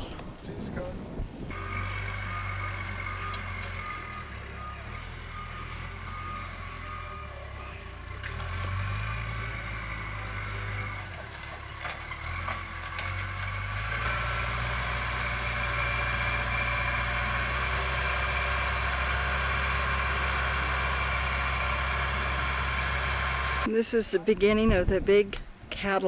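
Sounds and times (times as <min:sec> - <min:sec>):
large engine running: 0:01.5 - 0:23.7.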